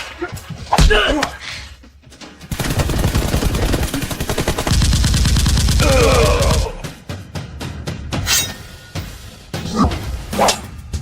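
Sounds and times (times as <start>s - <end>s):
rapid automatic gunfire: 2.5s - 6.6s.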